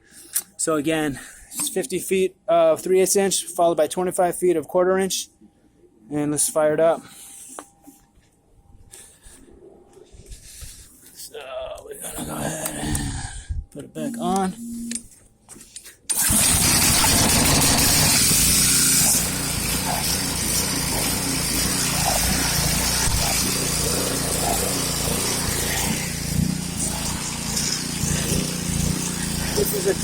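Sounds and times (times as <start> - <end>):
loud hiss: 16.1 - 30.0
pressure washer engine running: 16.1 - 30.0.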